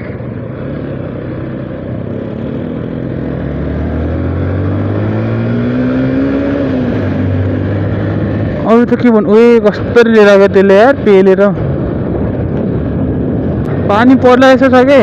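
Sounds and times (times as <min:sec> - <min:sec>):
motorcycle engine accelerating: 0:00.0 - 0:14.1
wind on microphone: 0:11.0 - 0:14.3.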